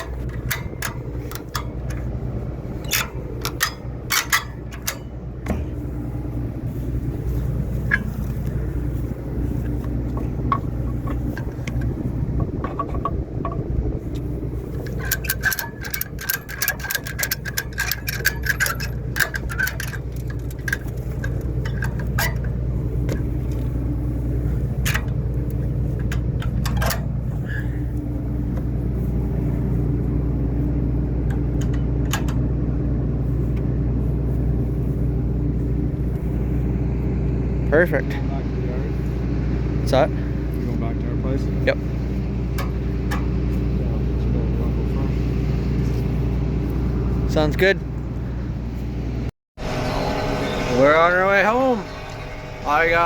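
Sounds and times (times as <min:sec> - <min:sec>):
metallic clanks and rattles: 0:00.0 - 0:48.8
tractor engine running: 0:00.0 - 0:53.0.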